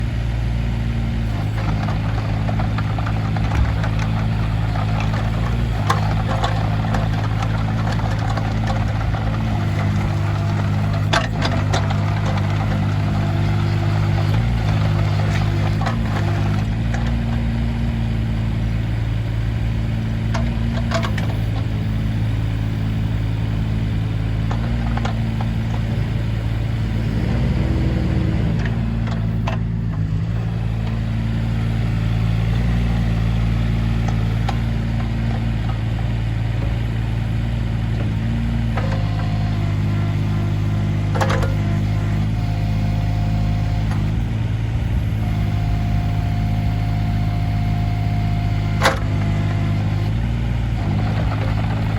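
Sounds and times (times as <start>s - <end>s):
diesel engine running: 0.0s - 51.9s.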